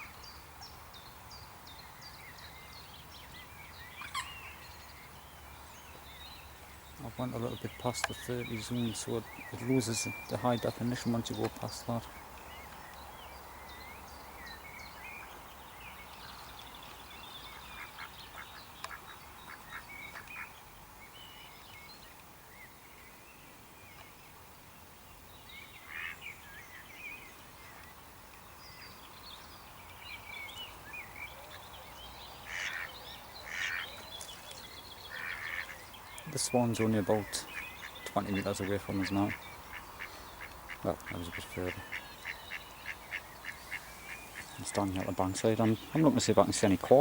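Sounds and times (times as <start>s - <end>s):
coarse bird calls: 1.7s - 23.0s, 25.5s - 47.0s
birds chirping and whistling: 30.1s - 47.0s.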